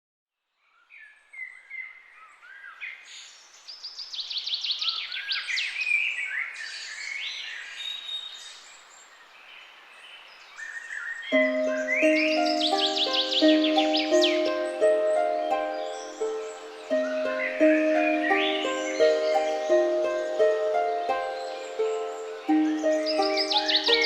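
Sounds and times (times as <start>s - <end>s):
songbirds singing: 0.6s - 24.0s
faint outdoor hiss: 6.6s - 24.0s.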